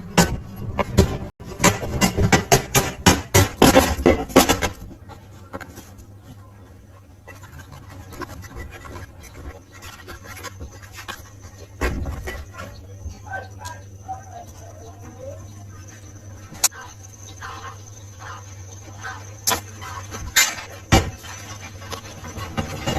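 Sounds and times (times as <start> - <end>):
rapid scraping strokes: 6.9 - 12.8, 16.6 - 22.9.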